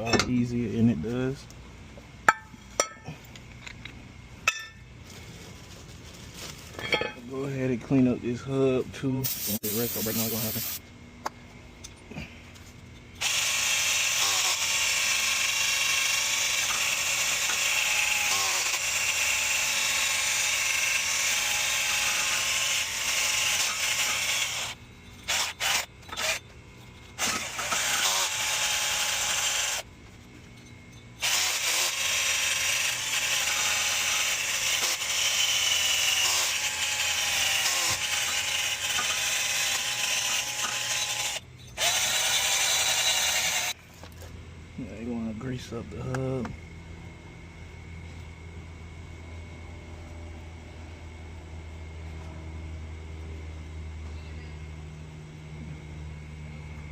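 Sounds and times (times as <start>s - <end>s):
power tool grinding metal: 9.2s - 10.8s, 13.2s - 29.9s, 31.2s - 43.8s.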